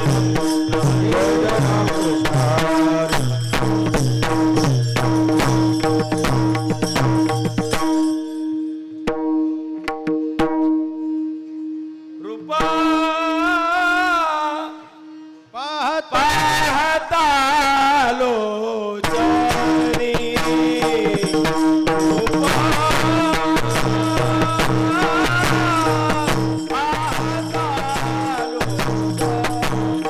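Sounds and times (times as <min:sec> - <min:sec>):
person singing devotional song: 0:00.0 - 0:04.7, 0:12.2 - 0:30.0
held drone note: 0:00.0 - 0:06.2
drum strokes: 0:00.0 - 0:08.2, 0:19.0 - 0:30.0.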